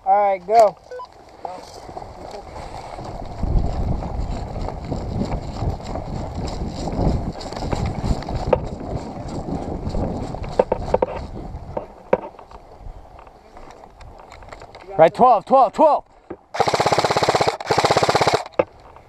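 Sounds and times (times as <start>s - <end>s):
wind buffeting microphone: 1.8s - 14.8s.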